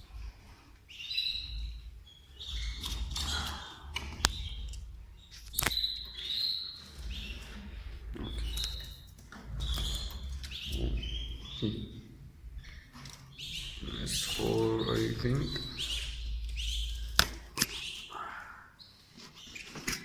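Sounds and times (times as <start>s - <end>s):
canaries chirping: 0.0s - 20.0s
sharp clicks: 2.5s - 7.5s, 12.6s - 18.1s.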